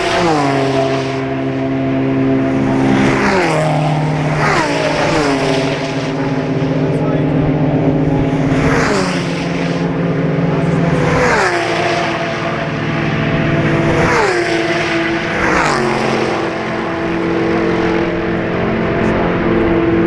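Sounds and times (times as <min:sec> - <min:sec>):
race cars passing at high revs: 0:00.0 - 0:20.0.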